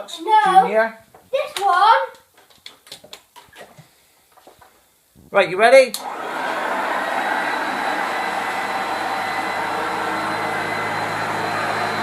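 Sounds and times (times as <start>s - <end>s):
vacuum cleaner motor humming: 6.0s - 12.0s.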